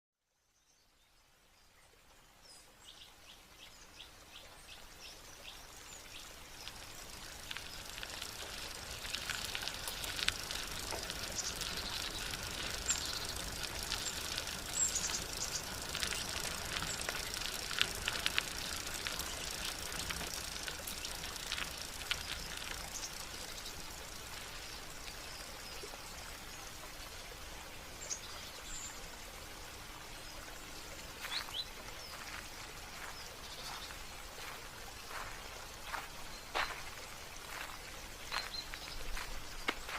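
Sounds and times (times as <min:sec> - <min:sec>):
small birds chirping: 0:02.2 - 0:26.8, 0:30.2 - 0:39.9
splashing running water: 0:06.1 - 0:28.0.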